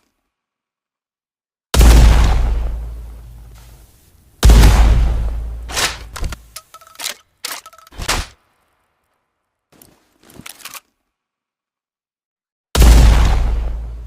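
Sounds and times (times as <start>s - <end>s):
shotgun action metallic clacks: 5.7s - 8.0s.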